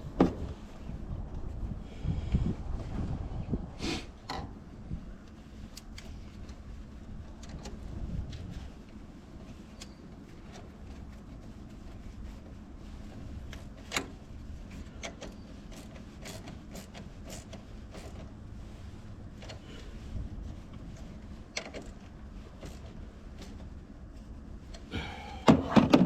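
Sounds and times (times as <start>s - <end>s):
low steady rumble: 0.0s - 26.0s
small clicks and knocks: 21.5s - 23.6s.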